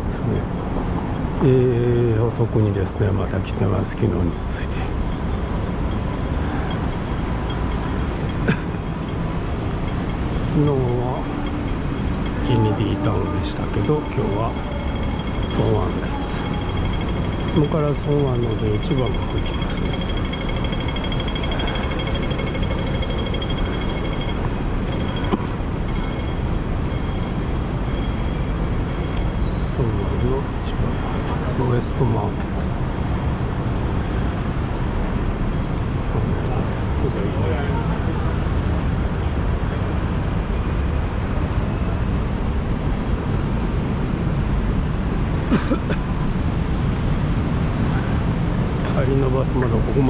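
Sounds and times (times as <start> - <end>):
low street rumble: 0.0 - 50.0
rapid even ticking: 13.8 - 29.4.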